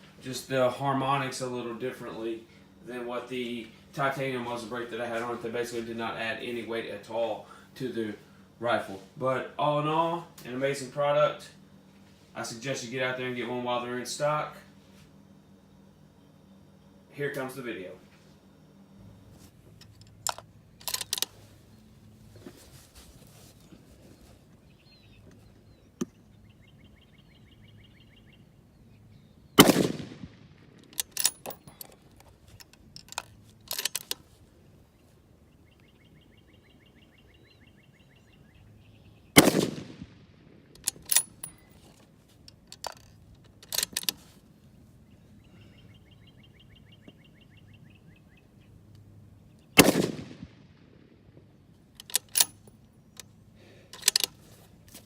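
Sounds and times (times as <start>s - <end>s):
rifle bolt clicks: 19.9s - 21.3s, 29.6s - 34.2s, 39.4s - 40.1s, 40.8s - 41.6s, 42.6s - 44.2s, 49.8s - 50.6s, 52.0s - 53.3s, 53.9s - 54.4s
rifle shots: 29.6s - 31.5s, 39.4s - 41.4s, 49.7s - 51.2s.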